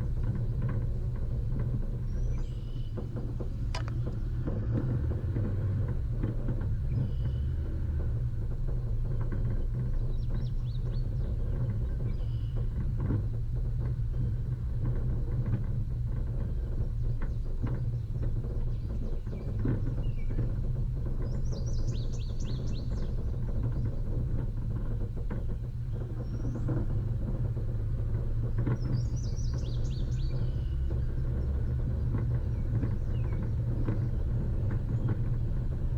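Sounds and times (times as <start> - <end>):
vehicle engine running: 0.0 - 35.9.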